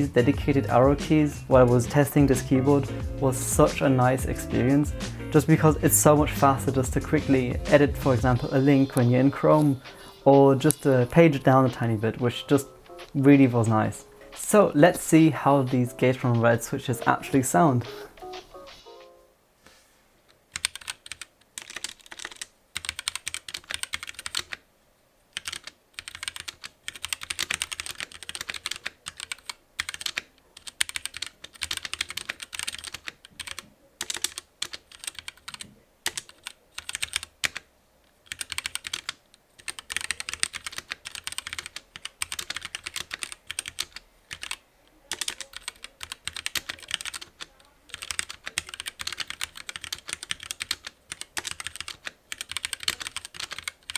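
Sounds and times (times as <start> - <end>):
fast typing on mechanical keyboard: 20.5 - 24.6, 25.3 - 53.9.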